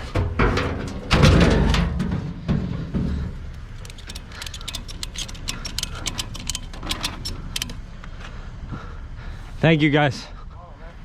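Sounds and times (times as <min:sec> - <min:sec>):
rapid mechanical clicking: 0:03.8 - 0:07.8.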